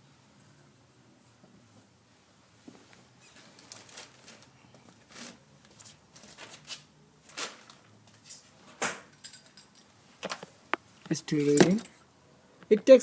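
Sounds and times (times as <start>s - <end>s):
handling clicks and rustles: 9.1s - 12.0s.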